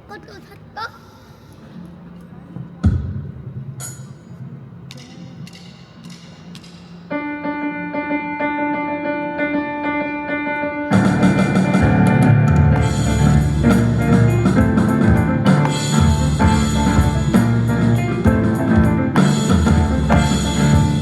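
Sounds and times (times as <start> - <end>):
held keyboard note: 7.2 - 21.0
ensemble music: 9.4 - 21.0
drum kit: 10.9 - 21.0.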